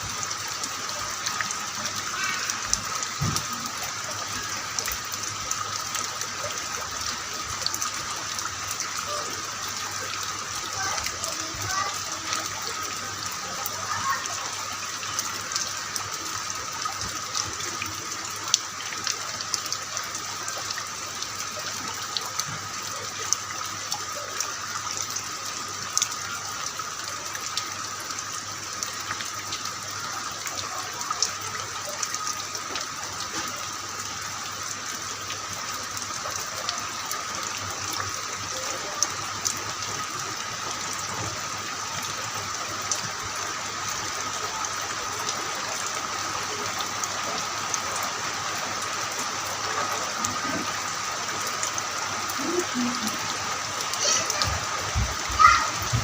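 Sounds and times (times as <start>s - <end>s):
heavy rain falling: 0.0s - 56.0s
raindrops tapping surfaces: 0.0s - 56.0s.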